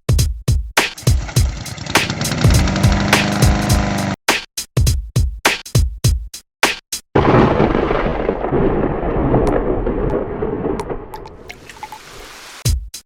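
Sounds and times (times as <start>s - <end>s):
electronic drum-machine beat: 0.1s - 6.4s, 12.7s - 13.0s
thunder rumble: 7.2s - 12.2s.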